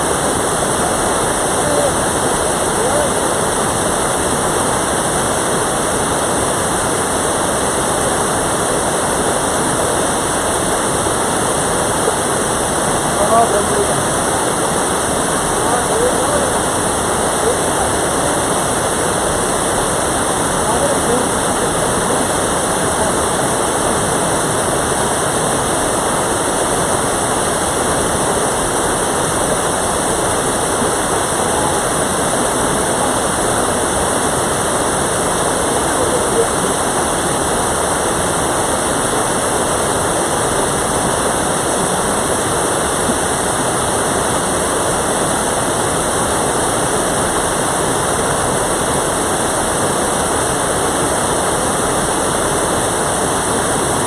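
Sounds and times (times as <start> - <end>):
stream rushing: 0.0 - 54.0.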